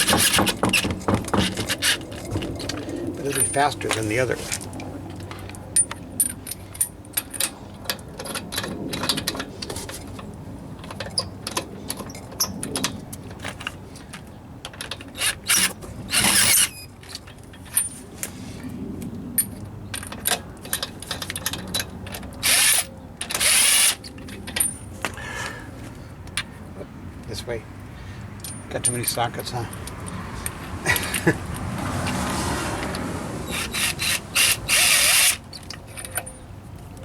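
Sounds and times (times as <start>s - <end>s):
ratchet wrench clicking: 33.5s - 36.2s.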